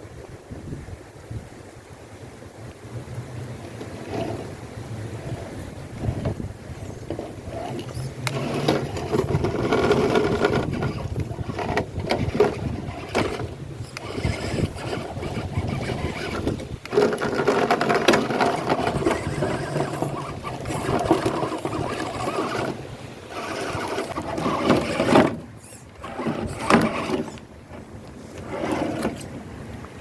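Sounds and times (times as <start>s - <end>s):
toy car electric motor whining: 3.8s - 4.5s, 5.2s - 27.4s, 28.3s - 29.3s.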